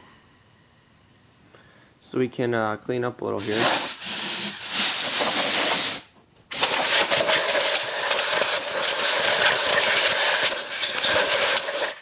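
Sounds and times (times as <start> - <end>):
compressed air hissing from nozzle: 3.4 - 12.0.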